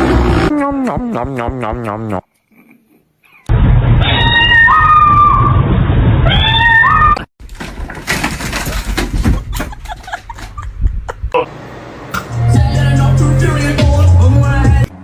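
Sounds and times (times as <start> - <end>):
cat meowing: 4.0 - 5.4, 6.3 - 7.2.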